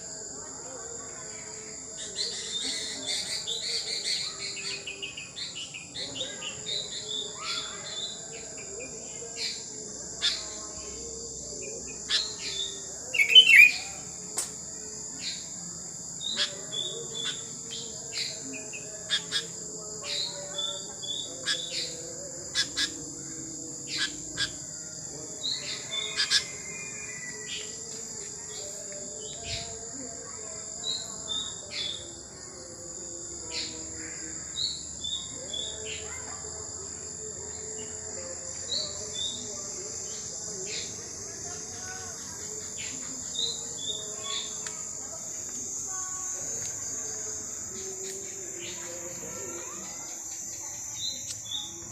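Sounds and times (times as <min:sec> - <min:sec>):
high-pitched insect drone: 0:00.0 - 0:51.9
birds chirping: 0:12.1 - 0:13.9.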